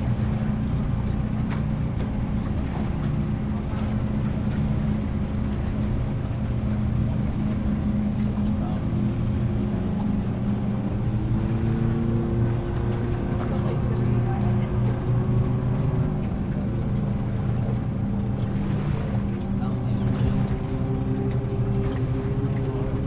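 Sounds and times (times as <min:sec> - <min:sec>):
boat engine humming: 0:00.0 - 0:23.0.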